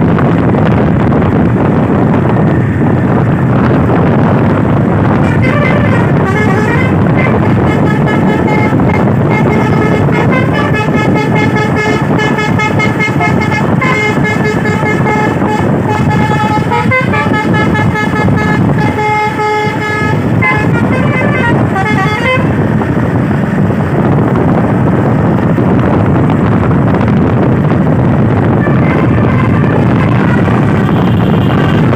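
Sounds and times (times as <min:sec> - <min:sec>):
road noise: 0:00.0 - 0:31.9
truck engine: 0:00.0 - 0:31.9
multi-tone truck horn tune: 0:04.6 - 0:23.2, 0:28.3 - 0:31.9.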